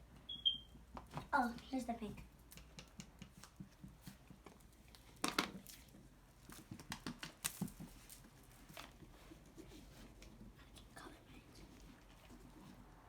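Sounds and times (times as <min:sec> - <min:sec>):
light clicks and taps: 0:00.9 - 0:12.7
rustling clatter: 0:03.6 - 0:10.6.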